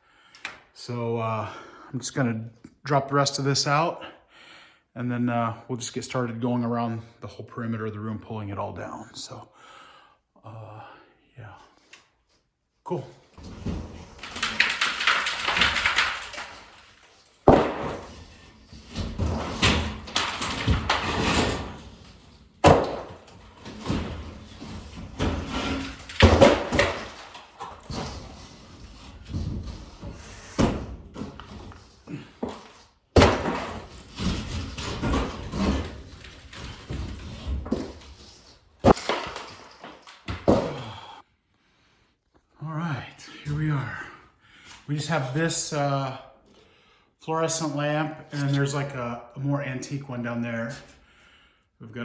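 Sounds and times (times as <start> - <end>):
paneling scraping: 13.3 - 41.2
wall paneling cracking and tearing: 13.3 - 41.2
panels slamming and clattering: 13.4 - 41.2.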